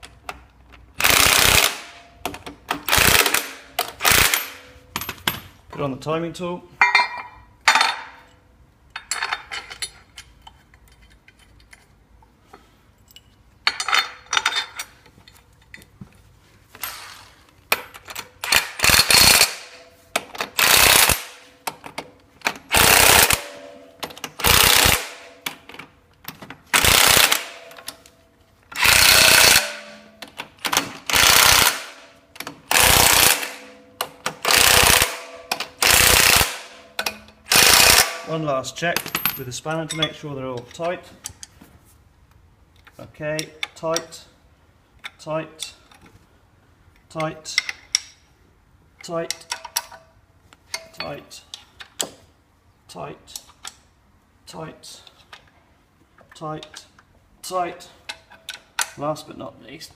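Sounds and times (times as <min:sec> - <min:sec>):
clicks and clatter of parts: 0:00.0 - 0:05.8, 0:06.8 - 0:38.4, 0:44.9 - 0:46.2, 0:46.9 - 0:48.3, 0:49.0 - 0:52.3, 0:53.3 - 0:53.9, 0:55.0 - 0:57.2, 0:58.0 - 0:59.0.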